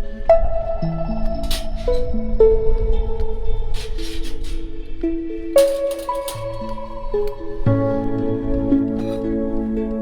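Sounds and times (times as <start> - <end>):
slow plucked melody: 0.0 - 10.0.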